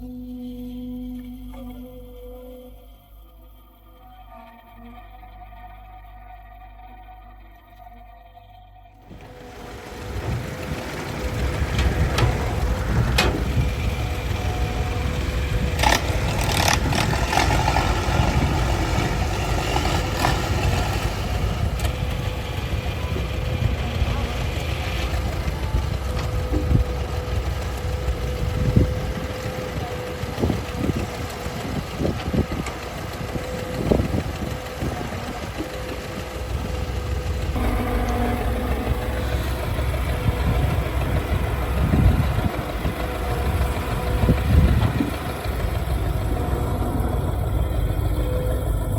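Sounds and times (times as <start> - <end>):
diesel engine rumbling: 8.9 - 48.9
knocks and clatter: 9.1 - 48.1.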